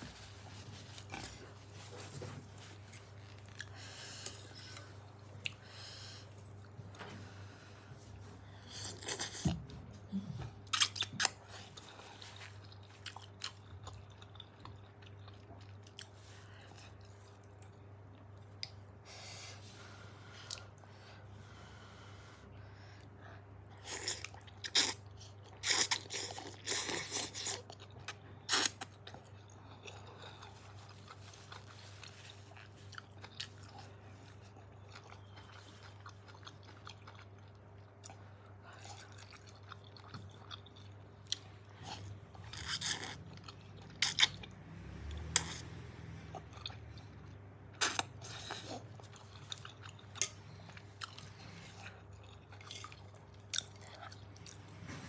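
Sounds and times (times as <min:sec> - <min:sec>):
low steady hum: 0:00.0 - 0:55.0
person chewing and crunching: 0:10.6 - 0:18.9, 0:23.7 - 0:54.6.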